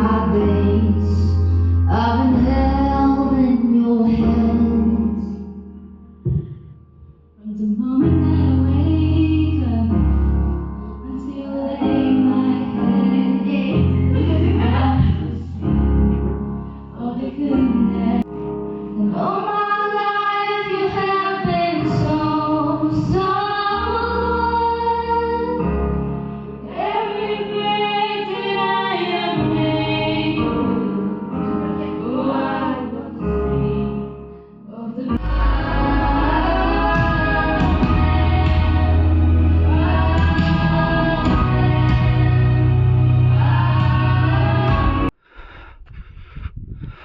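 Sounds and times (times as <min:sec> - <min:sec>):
woman singing: 0:00.0 - 0:05.4, 0:07.4 - 0:10.2, 0:11.1 - 0:15.6, 0:17.0 - 0:18.3, 0:19.0 - 0:25.6
deep bass notes: 0:00.0 - 0:18.2, 0:35.2 - 0:47.0.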